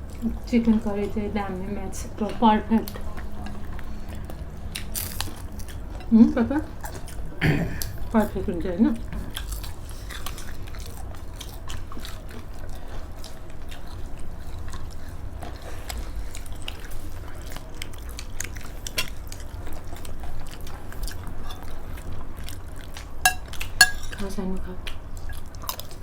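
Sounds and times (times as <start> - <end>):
wet chewing and mouth sounds: 2.2 - 8.1, 9.0 - 26.0
clicks of plates and utensils: 23.3 - 24.3.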